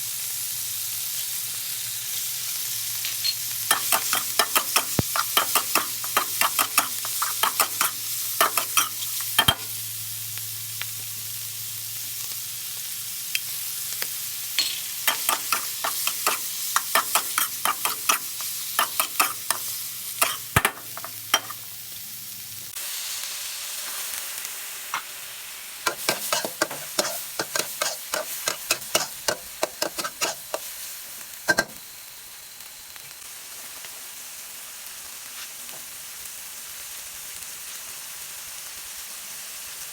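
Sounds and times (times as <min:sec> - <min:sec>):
seafood sizzling in pan: 0:00.0 - 0:39.9
spatula scraping pan: 0:03.2 - 0:09.7, 0:14.6 - 0:21.6, 0:25.9 - 0:30.8.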